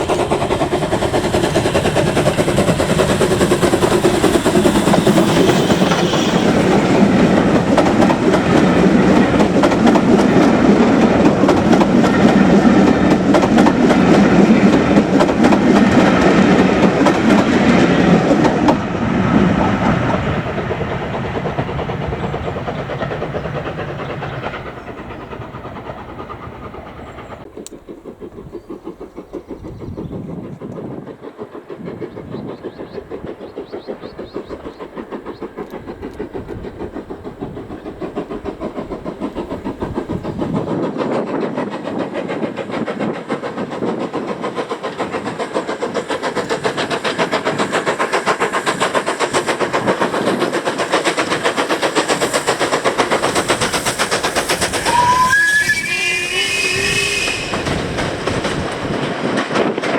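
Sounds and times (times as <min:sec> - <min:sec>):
steam locomotive exhaust beats: 0:00.0 - 0:59.9
steam whistle chord: 0:54.9 - 0:57.7.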